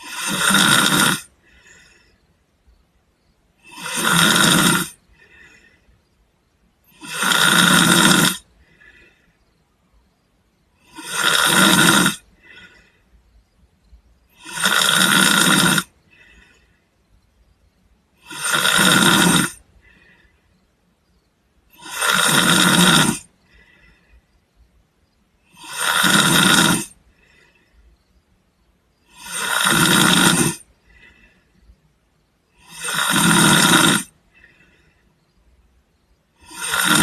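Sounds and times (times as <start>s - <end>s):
man snoring: 0.0s - 2.1s, 3.6s - 5.7s, 6.9s - 9.2s, 10.8s - 12.9s, 14.3s - 16.6s, 18.2s - 20.2s, 21.7s - 24.0s, 25.4s - 27.6s, 29.0s - 31.3s, 32.5s - 34.8s, 36.4s - 37.0s.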